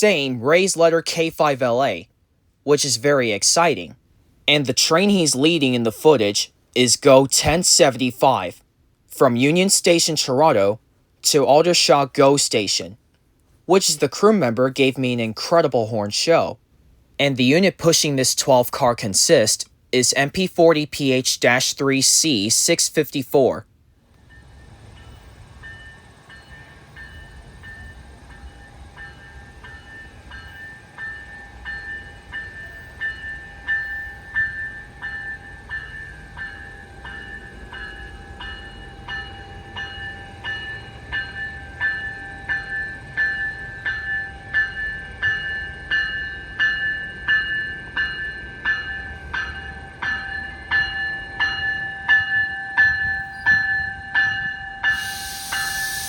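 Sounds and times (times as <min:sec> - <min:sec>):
approaching train rumble: 0:24.1 - 0:56.0
steady ringing tone: 0:24.2 - 0:56.0
rhythmic clanging bell: 0:24.3 - 0:56.0.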